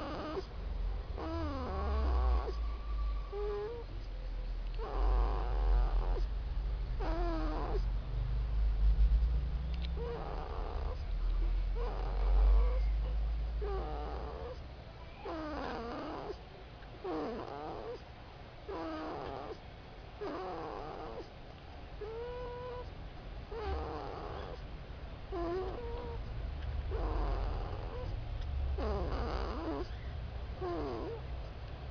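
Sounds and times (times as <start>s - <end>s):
pet snoring with whistling: 0.0s - 0.5s, 1.2s - 4.0s, 4.8s - 6.3s, 7.0s - 7.9s, 9.9s - 11.0s, 11.7s - 16.4s, 17.0s - 18.0s, 18.7s - 19.6s, 20.2s - 21.3s, 22.0s - 22.9s, 23.5s - 24.6s, 25.3s - 26.2s, 26.9s - 28.1s, 28.8s - 31.2s.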